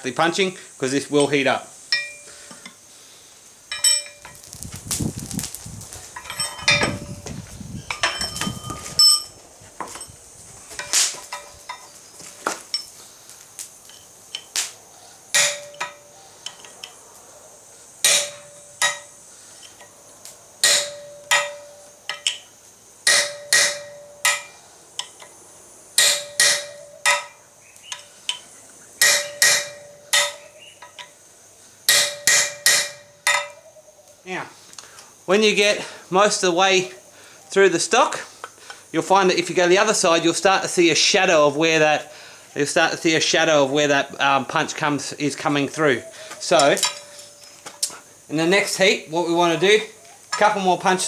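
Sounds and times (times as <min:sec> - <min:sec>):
hammer striking steel on anvil: 0:01.9 - 0:02.2, 0:15.4 - 0:16.1, 0:18.0 - 0:19.1, 0:20.6 - 0:22.4, 0:23.1 - 0:25.2, 0:26.0 - 0:28.0, 0:29.0 - 0:31.1, 0:31.9 - 0:33.6.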